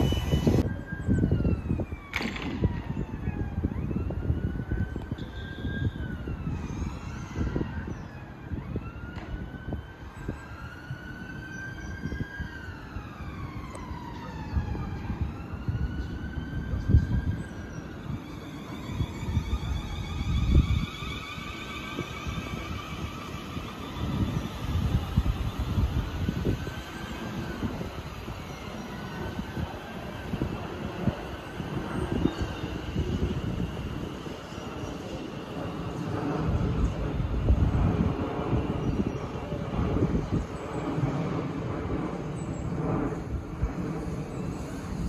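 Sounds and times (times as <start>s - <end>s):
emergency siren wailing: 0.0s - 45.0s
street noise rumble: 0.0s - 45.0s.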